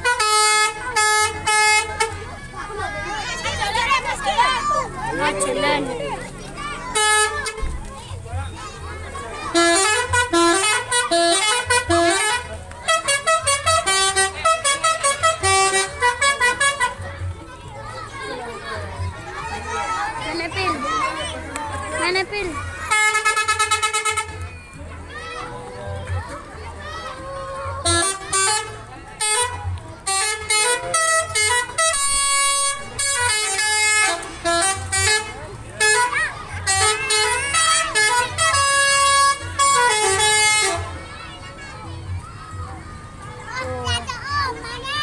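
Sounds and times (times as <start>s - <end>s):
musical bus horn melody: 0.0s - 2.3s, 3.1s - 7.9s, 9.4s - 17.0s, 22.0s - 24.5s, 27.6s - 41.1s.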